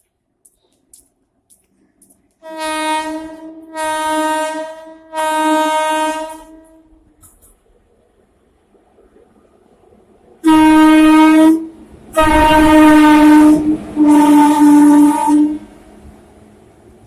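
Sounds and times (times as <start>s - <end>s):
locomotive horn blasts: 2.4s - 7.0s, 10.4s - 15.7s
low held horn note: 10.5s - 15.6s.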